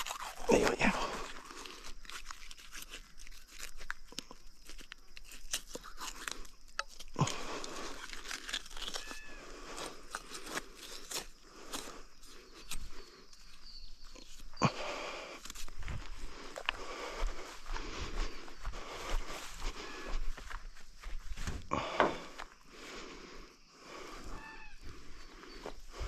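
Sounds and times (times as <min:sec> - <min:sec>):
knife crunching and tearing meat: 0:00.0 - 0:17.0.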